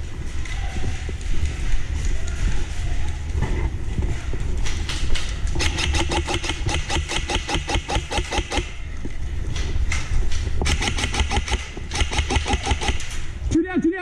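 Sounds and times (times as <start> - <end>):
airsoft gun firing full auto: 5.6 - 8.8, 10.6 - 13.2.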